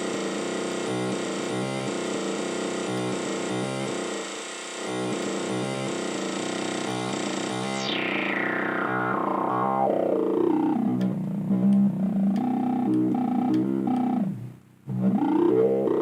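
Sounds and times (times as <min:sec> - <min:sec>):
synthesizer pulsed pattern: 0:04.9 - 0:16.0.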